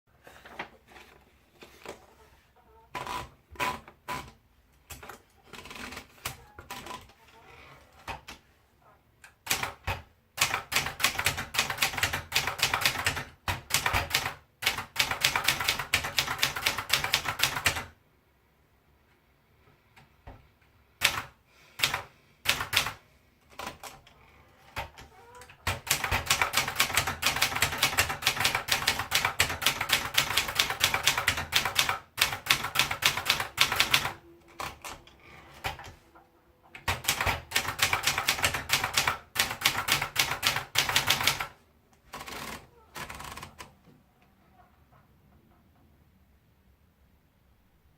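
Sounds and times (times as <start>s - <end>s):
manual typewriter typing: 3.0s - 7.1s, 9.4s - 18.0s, 21.0s - 24.1s, 24.7s - 36.0s, 36.8s - 43.7s.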